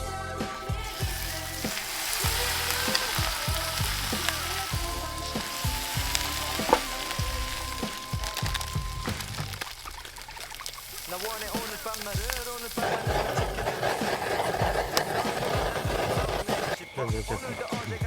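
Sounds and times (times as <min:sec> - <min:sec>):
background music with beat: 0:00.0 - 0:09.6
food sizzling: 0:00.2 - 0:18.0.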